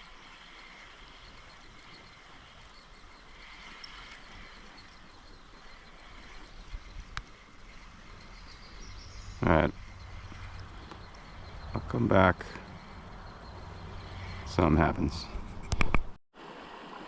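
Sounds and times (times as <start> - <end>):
sharp click: 15.6 - 16.1.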